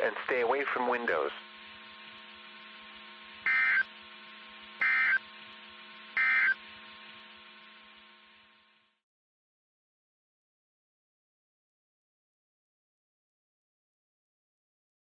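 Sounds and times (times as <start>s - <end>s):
low broadcast hum: 0.0s - 9.0s
buzzy two-tone data chirps: 3.4s - 3.9s, 4.8s - 5.3s, 6.2s - 6.6s.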